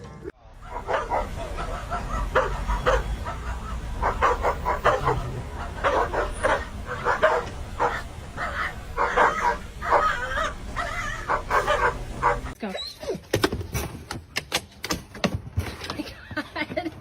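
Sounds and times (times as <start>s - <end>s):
dog barking and yipping: 0.6s - 12.6s.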